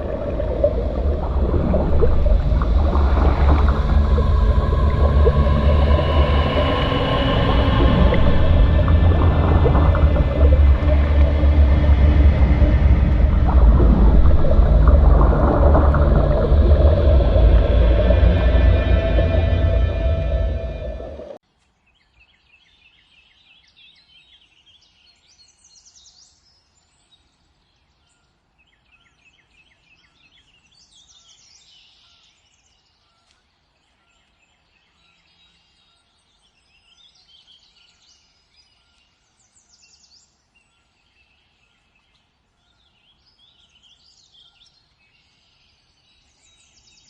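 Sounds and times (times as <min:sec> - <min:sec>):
low background rumble: 0:00.0 - 0:21.4
songbirds chirping and trilling: 0:21.6 - 0:47.0.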